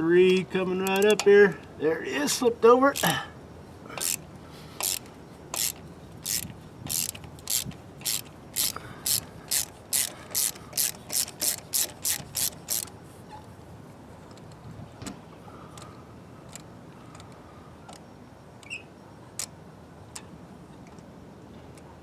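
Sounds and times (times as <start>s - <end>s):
ratchet wrench clicking: 0.8s - 1.3s, 4.0s - 4.2s, 4.8s - 12.9s.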